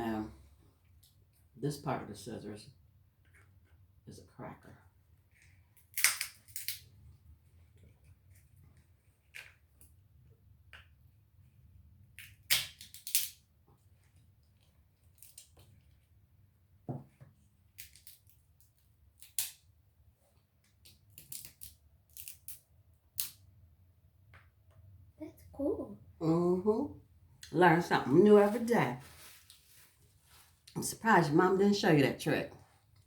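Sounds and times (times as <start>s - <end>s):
crab shell cracking: 5.8s - 6.9s, 12.2s - 13.4s, 17.8s - 18.4s, 19.2s - 19.6s, 20.8s - 22.6s.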